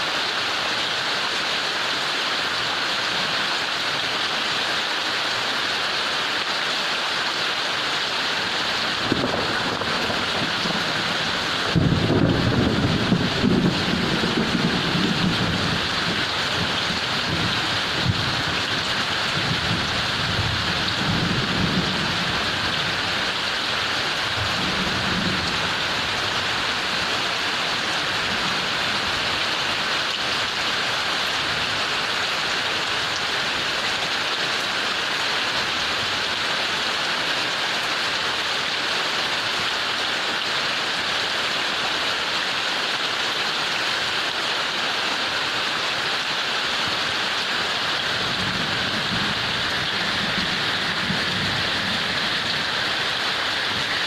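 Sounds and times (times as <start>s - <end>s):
heavy rain falling: 0.0s - 54.0s
low rumble of thunder: 9.0s - 23.0s, 24.3s - 25.8s.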